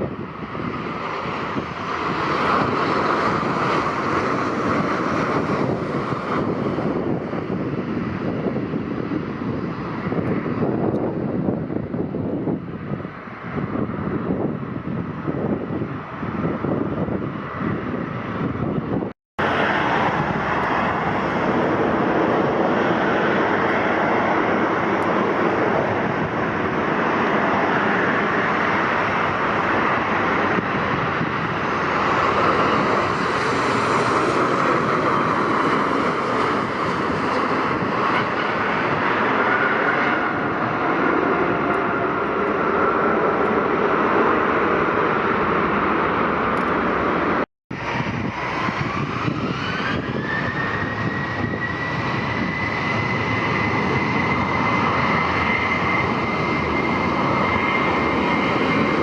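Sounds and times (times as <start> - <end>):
airliner engines passing: 0.0 - 59.0.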